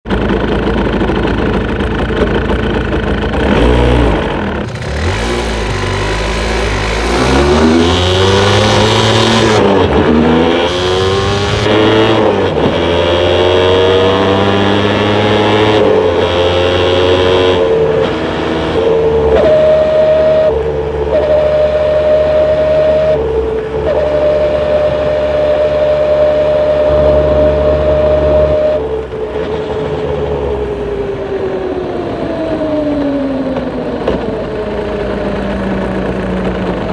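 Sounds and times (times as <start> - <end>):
motorcycle engine revving: 0.1 - 36.9
thin steady whine: 26.1 - 29.7.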